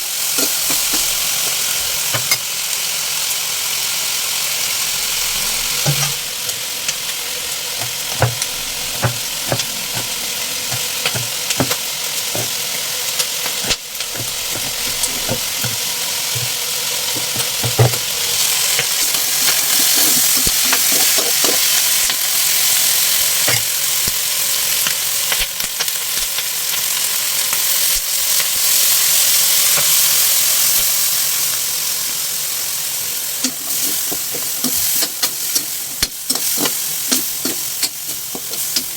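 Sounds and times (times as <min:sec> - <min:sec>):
food sizzling in a pan: 0:00.0 - 0:38.9
utensil knocking against pan: 0:07.8 - 0:12.6, 0:13.5 - 0:16.6, 0:17.2 - 0:18.1.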